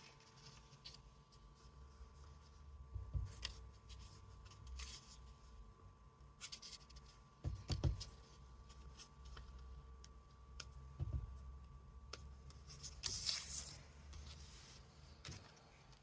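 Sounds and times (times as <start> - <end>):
soft knocks on desk: 11.0 - 11.3.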